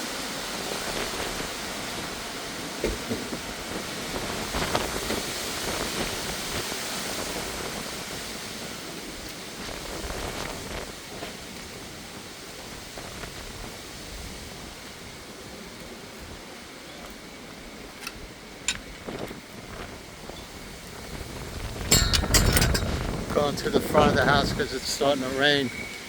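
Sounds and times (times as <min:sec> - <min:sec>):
rain: 0:00.0 - 0:21.9, 0:22.9 - 0:26.0
wind gusts through trees: 0:00.0 - 0:26.0
wind buffeting microphone: 0:17.5 - 0:26.0.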